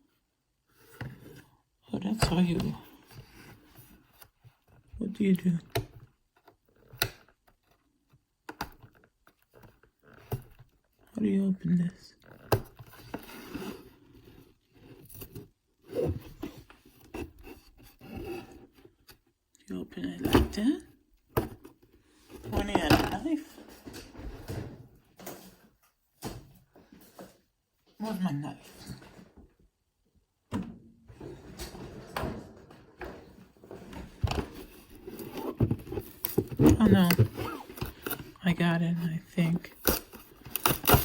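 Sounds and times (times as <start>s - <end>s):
packaging rubbing and scraping: 33.7s - 41.0s.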